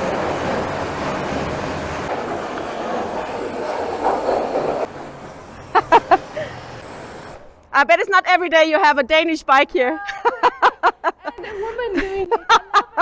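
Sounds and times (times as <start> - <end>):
pressure washer spraying water: 0.0 - 7.6.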